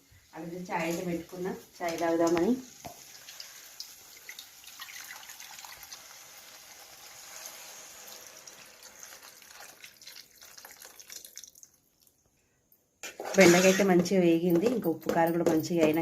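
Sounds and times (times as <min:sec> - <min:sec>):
okra sizzling in hot oil: 0:00.0 - 0:12.0.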